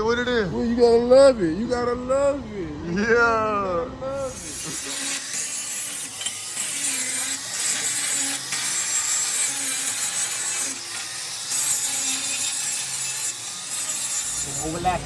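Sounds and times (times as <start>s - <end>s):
grinder grinding steel plate: 4.2s - 15.0s.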